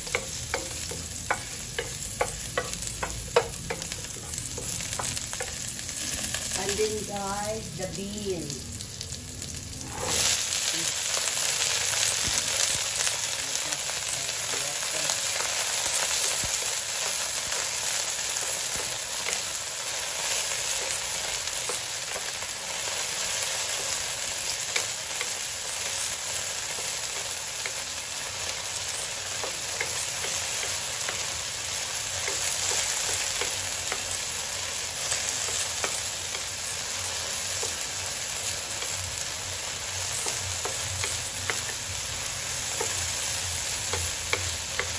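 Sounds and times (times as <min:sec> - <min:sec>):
beans sizzling in oil: 0:00.0 - 0:44.9.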